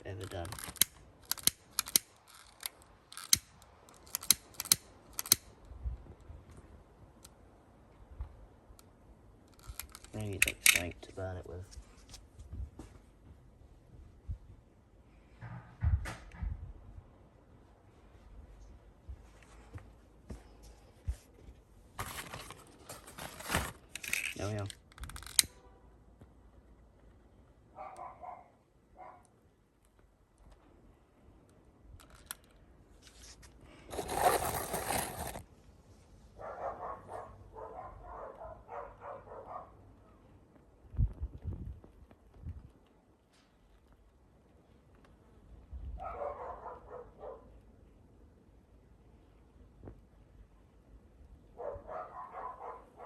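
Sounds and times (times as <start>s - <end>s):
sharp mechanical clicks and snaps: 0.2s - 5.7s, 9.5s - 10.9s, 23.9s - 25.6s.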